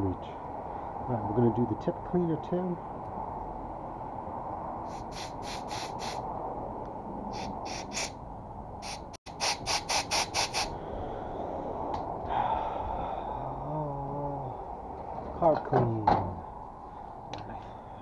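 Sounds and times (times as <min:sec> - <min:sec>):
air blow gun hissing blasts: 0:04.8 - 0:06.2, 0:07.3 - 0:08.2, 0:08.8 - 0:10.7.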